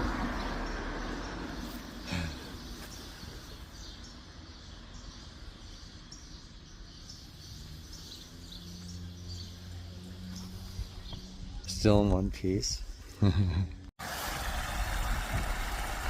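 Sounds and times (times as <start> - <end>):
small birds chirping: 0.0 - 13.4.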